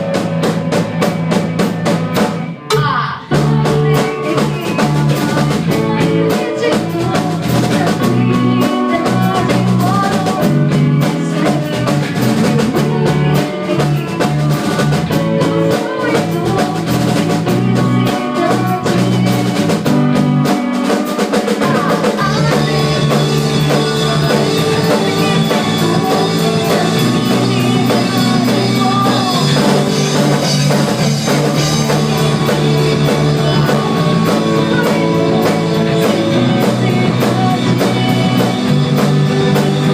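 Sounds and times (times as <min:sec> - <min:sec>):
rock band playing: 0:00.0 - 0:39.9.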